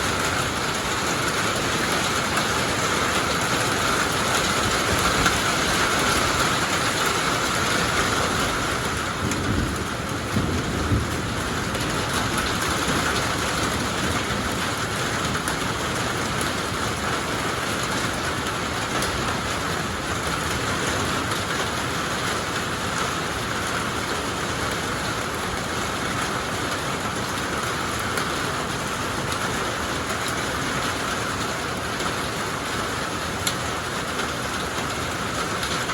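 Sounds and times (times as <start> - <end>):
heavy rain falling: 0.0 - 35.9
low thunder rumble: 7.4 - 14.6.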